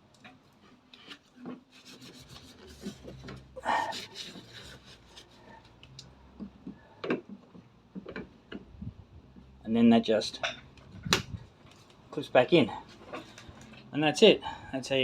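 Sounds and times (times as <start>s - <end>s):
rubbing on plastic lamp: 1.0s - 5.8s.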